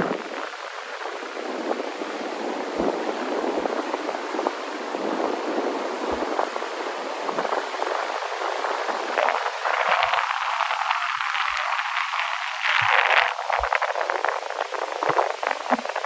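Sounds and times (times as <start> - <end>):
wind rushing over microphone: 0.0 - 16.0.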